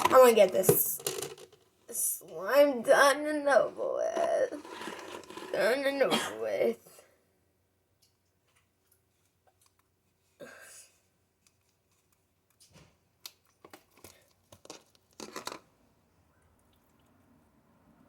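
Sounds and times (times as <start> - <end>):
slime container rustle: 4.1 - 5.8.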